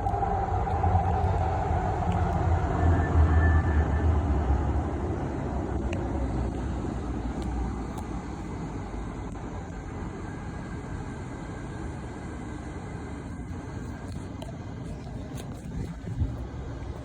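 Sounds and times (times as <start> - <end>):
train rumble: 0.0 - 12.4.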